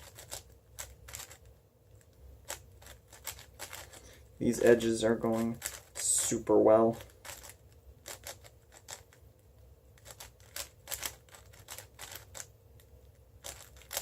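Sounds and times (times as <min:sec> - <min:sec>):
puzzle cube plastic clicks: 0:00.0 - 0:04.0, 0:04.7 - 0:06.2, 0:06.9 - 0:09.2, 0:09.9 - 0:14.0.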